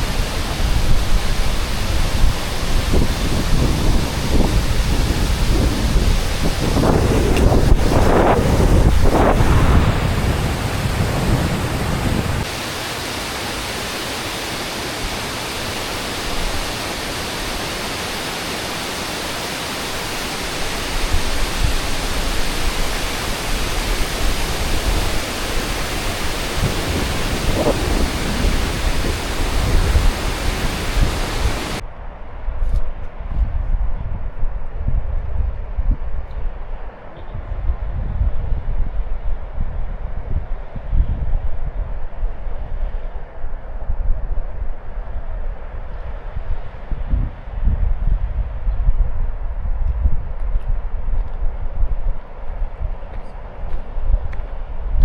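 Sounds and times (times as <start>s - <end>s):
steady rushing hiss: 0.0s - 31.8s
wind buffeting microphone: 0.0s - 55.0s.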